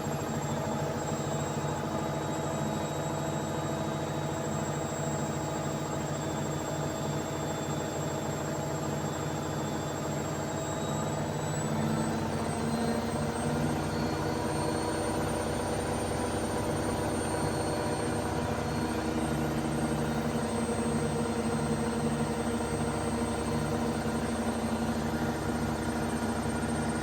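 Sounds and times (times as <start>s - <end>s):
washing machine spinning: 11.1s - 27.0s.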